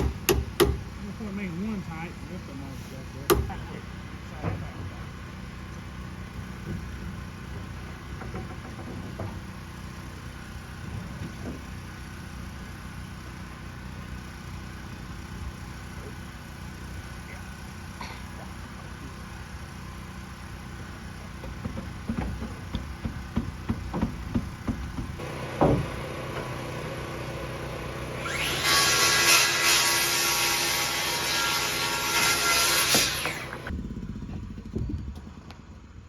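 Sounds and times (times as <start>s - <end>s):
engine running: 0.0s - 28.6s, 33.3s - 36.0s
knocks: 21.4s - 25.9s.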